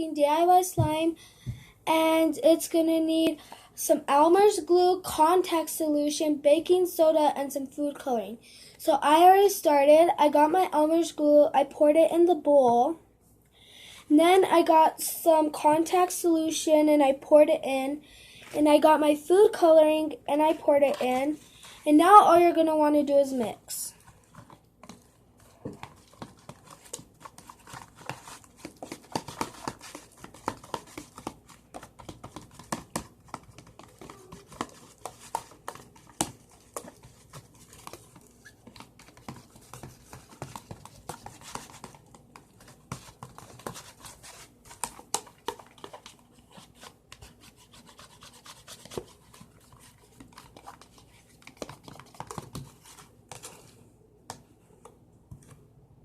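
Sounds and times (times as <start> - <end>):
utensil stirring slime in bowl: 18.4 - 55.6.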